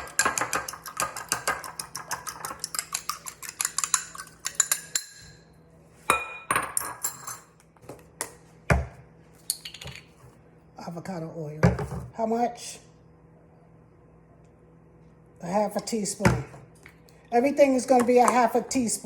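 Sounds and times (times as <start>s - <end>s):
whisk clinking against bowl: 0.0s - 5.4s.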